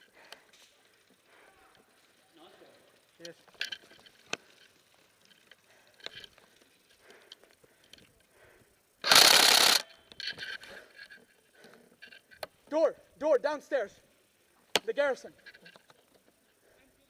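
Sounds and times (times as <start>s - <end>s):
faint clicks and knocks of gear: 0.0s - 12.8s, 14.4s - 17.0s
airsoft rifle full-auto burst: 9.0s - 9.9s.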